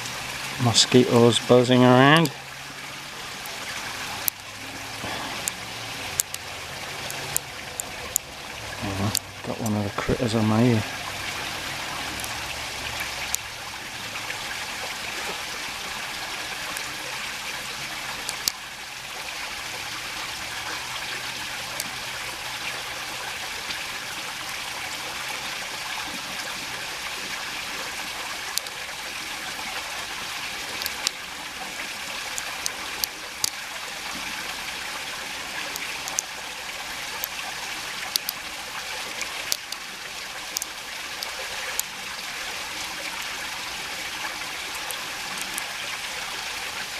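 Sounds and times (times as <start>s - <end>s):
creek running over stones: 0.0s - 46.9s
small sharp clicks: 4.2s - 4.5s, 6.2s - 6.4s, 13.3s - 13.5s, 18.2s - 18.6s, 30.8s - 31.2s, 35.7s - 36.3s, 38.1s - 38.4s, 39.2s - 39.9s, 40.6s - 41.9s.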